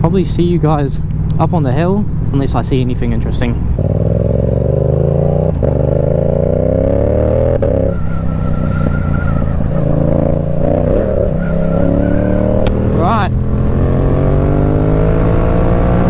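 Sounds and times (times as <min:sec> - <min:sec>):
motorcycle engine accelerating: 0:00.0 - 0:16.0.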